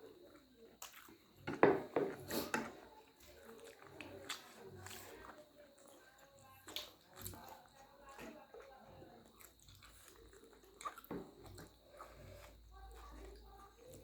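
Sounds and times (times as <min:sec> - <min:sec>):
chewing: 0:00.0 - 0:14.0.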